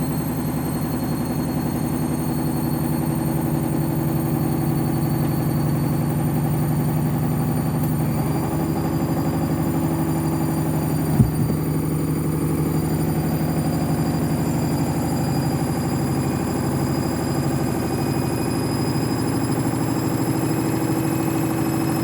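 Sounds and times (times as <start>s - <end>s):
washing machine spinning: 0.0s - 22.0s
sharp knock: 11.1s - 11.7s.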